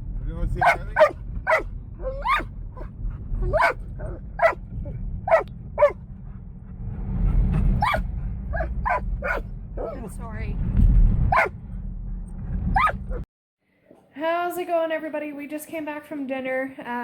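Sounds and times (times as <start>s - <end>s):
van road rumble: 0.0s - 13.3s
dog barking: 0.6s - 4.6s, 5.3s - 6.0s, 7.8s - 8.0s, 8.6s - 10.0s, 11.3s - 11.5s, 12.8s - 13.0s.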